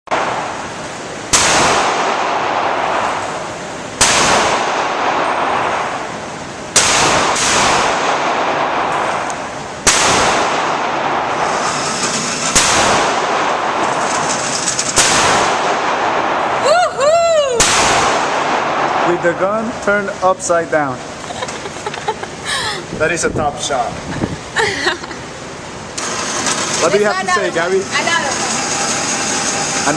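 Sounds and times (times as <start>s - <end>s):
pistol shots: 1.3s - 3.2s, 4.0s - 6.0s, 6.7s - 11.6s, 12.4s - 16.6s, 17.6s - 19.3s.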